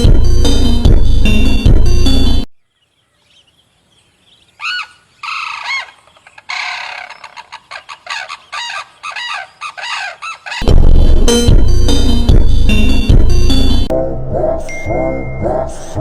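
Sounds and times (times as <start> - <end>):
animal calling: 4.4 - 10.7.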